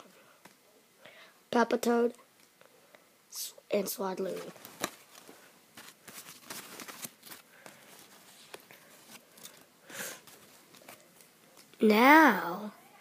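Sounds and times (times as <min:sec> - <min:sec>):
wrapper rustle: 0:04.2 - 0:11.2
cards and foil wrapper crackling: 0:04.3 - 0:11.3.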